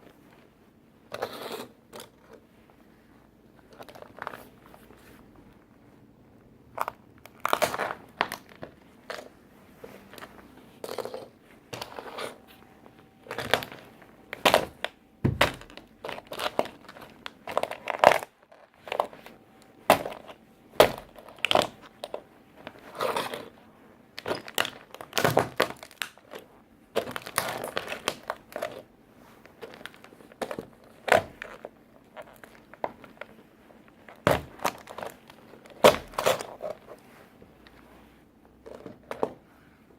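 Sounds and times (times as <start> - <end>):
plastic crunching and crackling: 3.2 - 5.2, 6.7 - 37.8
boots stomping on toy: 14.4 - 16.4, 19.9 - 21.8.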